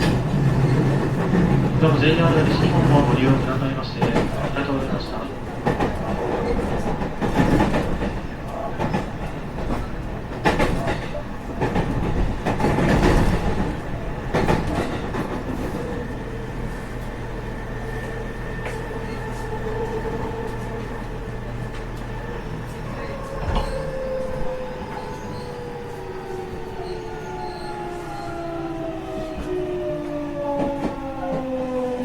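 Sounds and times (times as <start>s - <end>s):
train wheels knocking over rail joints: 5.6s - 15.8s.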